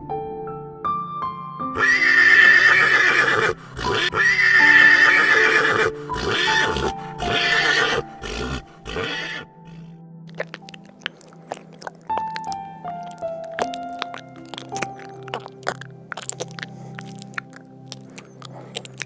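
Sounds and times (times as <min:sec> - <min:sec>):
piano music: 0:00.0 - 0:19.0
horse whinnying: 0:01.8 - 0:09.9.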